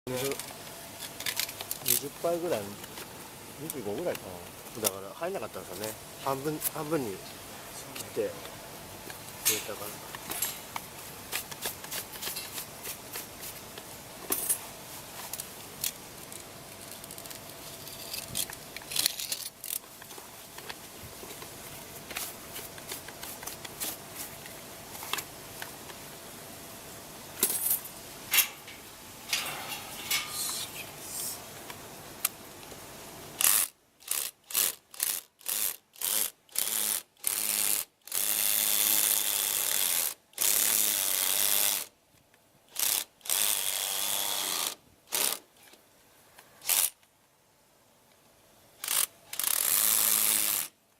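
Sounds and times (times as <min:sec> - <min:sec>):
clicks and handling noises: 0:00.2 - 0:02.1, 0:07.9 - 0:26.0, 0:27.4 - 0:30.6.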